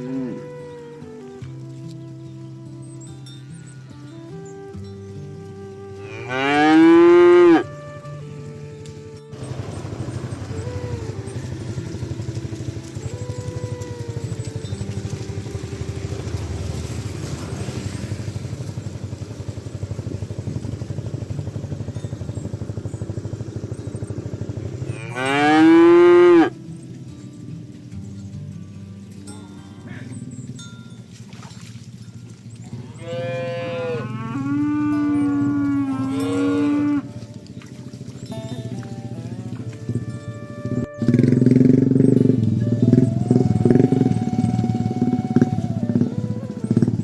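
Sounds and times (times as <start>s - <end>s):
cow mooing: 0.0s - 1.2s, 5.9s - 7.9s, 24.8s - 26.6s, 32.6s - 37.3s
small engine running: 0.0s - 47.0s.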